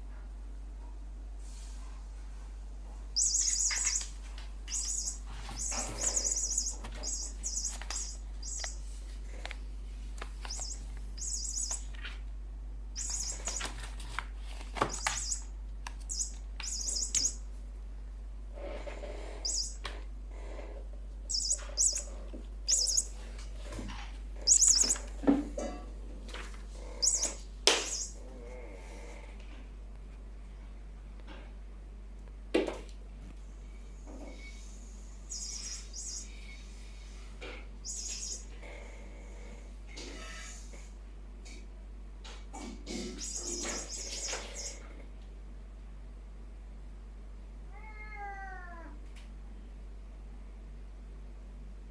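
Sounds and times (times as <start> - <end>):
toy bird chirping: 3.2 - 8.8, 10.4 - 12.0, 13.0 - 13.8, 14.8 - 17.4, 19.4 - 19.8, 21.3 - 23.2, 24.4 - 25.1, 27.0 - 28.2, 35.3 - 36.7, 37.8 - 38.5, 43.0 - 44.8
toy knocking and scuffling: 3.2 - 9.5, 10.1 - 12.2, 13.0 - 17.4, 21.3 - 23.9, 24.5 - 25.6, 26.4 - 28.2.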